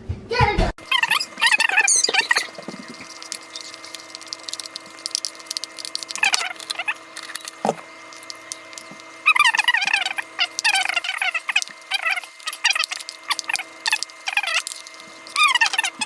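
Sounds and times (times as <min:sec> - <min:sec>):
steady low hum: 0:00.8 - 0:16.0.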